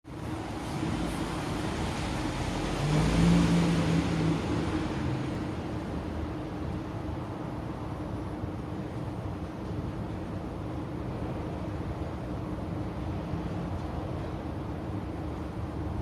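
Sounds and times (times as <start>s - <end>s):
traffic hum: 0.0s - 16.0s
vehicle passing: 0.4s - 6.1s.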